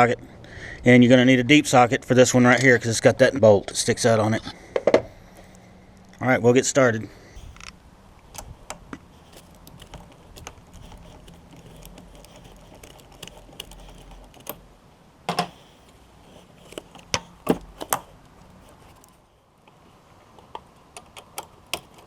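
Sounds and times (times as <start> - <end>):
socket wrench ratcheting: 8.3 - 14.6.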